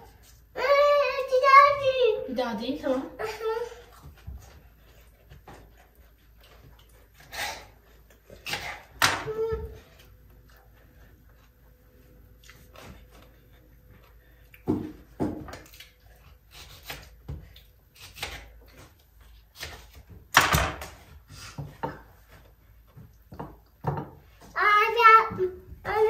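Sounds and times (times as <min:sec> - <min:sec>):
household knocks and clatters: 0:14.6 - 0:15.6, 0:20.3 - 0:24.5.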